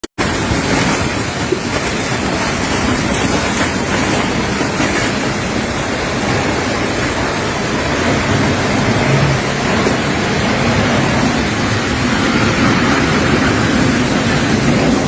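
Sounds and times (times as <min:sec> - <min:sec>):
strong wind buffeting microphone: 0:00.1 - 0:15.0.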